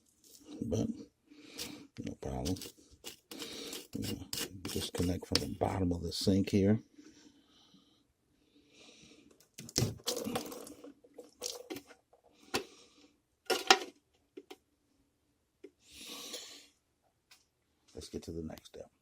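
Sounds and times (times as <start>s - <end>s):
short rasping rub: 2.5s - 5.5s.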